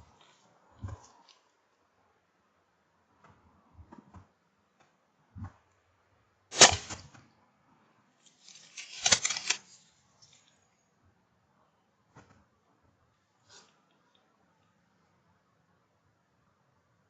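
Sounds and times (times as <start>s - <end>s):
air rifle shot: 6.5s - 7.1s.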